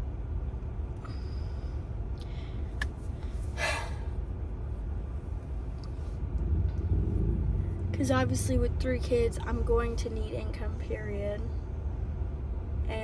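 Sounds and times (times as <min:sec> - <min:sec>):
road and engine rumble in car: 0:00.0 - 0:13.0
person breathing: 0:01.0 - 0:04.2.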